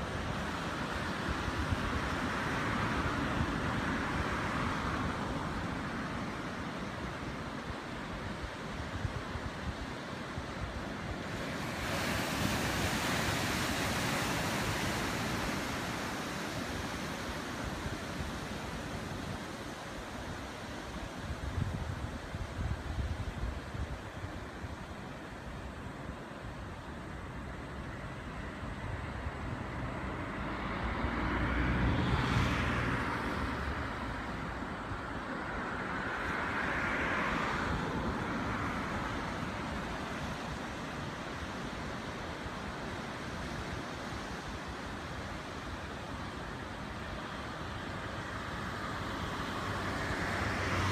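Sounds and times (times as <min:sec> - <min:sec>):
low rumble of sea: 0:00.0 - 0:50.9
surf breaking on a beach: 0:00.0 - 0:50.9
wave breaking: 0:11.2 - 0:20.1.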